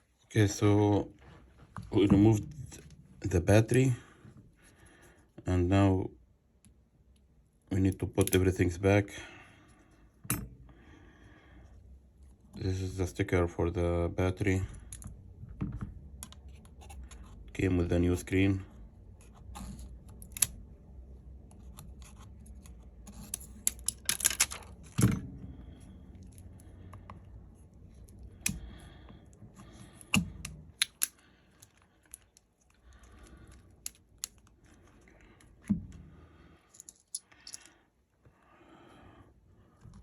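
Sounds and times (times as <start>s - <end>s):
small clicks and rustling: 29.6s - 36.0s.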